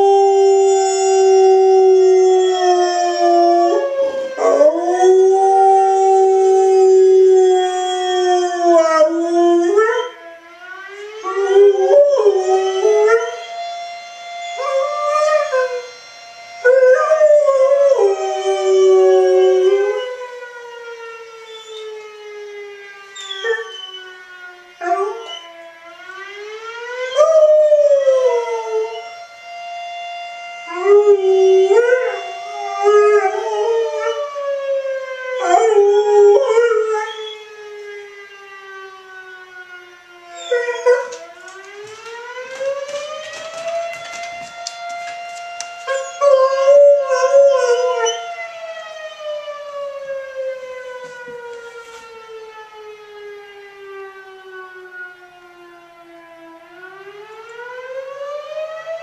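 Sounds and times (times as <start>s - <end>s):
fire siren wailing: 0.0s - 59.0s
dog howling: 1.8s - 10.2s, 23.2s - 24.0s, 30.7s - 34.4s, 35.4s - 37.4s, 40.3s - 41.2s, 45.8s - 48.3s.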